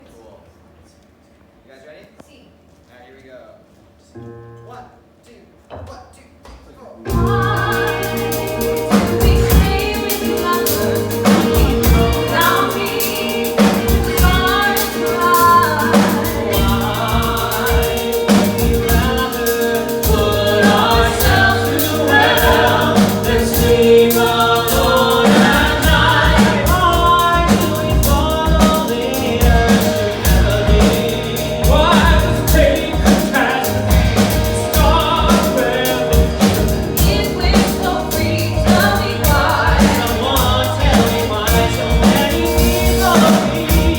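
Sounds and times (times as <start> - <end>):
band with drum kit: 5.8 - 43.9
voices singing together: 7.1 - 43.9.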